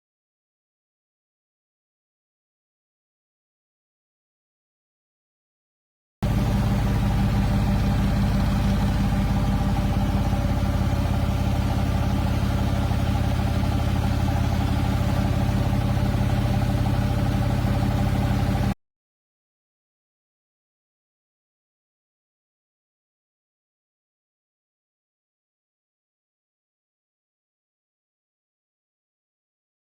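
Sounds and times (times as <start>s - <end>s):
washing machine motor hum: 6.2s - 18.8s.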